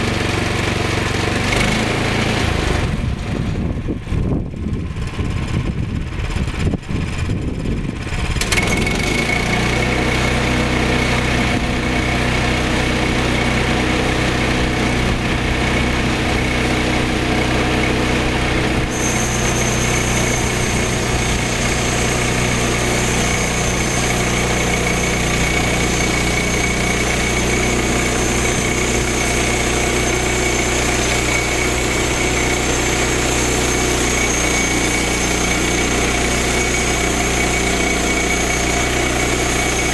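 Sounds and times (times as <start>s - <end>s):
small gasoline engine running: 0.0s - 39.9s
high steady whine: 10.0s - 39.9s.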